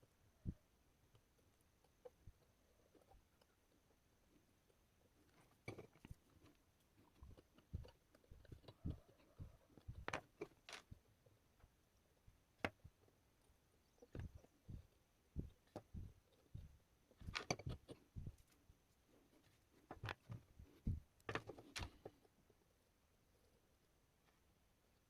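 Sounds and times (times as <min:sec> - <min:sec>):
small objects clicking and tapping: 0:04.6 - 0:11.7, 0:14.0 - 0:18.6, 0:19.8 - 0:22.3.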